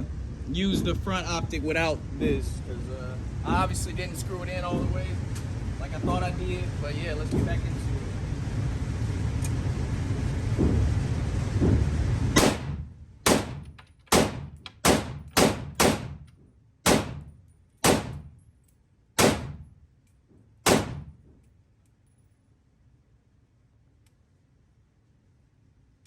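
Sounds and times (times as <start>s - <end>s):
low rumbling noise: 0.0s - 16.3s
rifle shots with echo: 12.4s - 16.2s, 16.8s - 18.3s, 19.2s - 19.6s, 20.7s - 21.2s.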